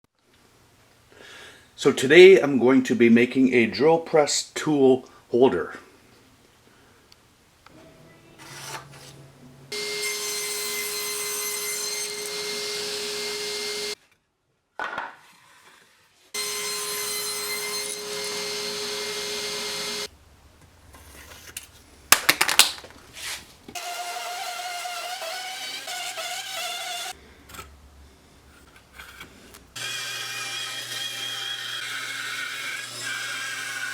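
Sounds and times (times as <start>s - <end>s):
power saw cutting wood: 8.4s - 14.0s, 16.4s - 20.1s, 23.8s - 27.2s, 29.0s - 33.9s.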